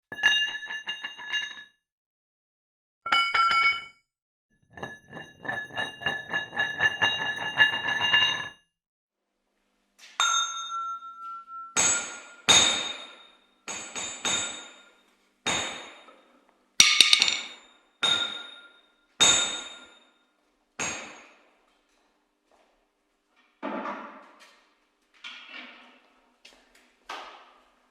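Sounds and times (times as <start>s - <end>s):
ringing dings: 10.2s - 12.4s.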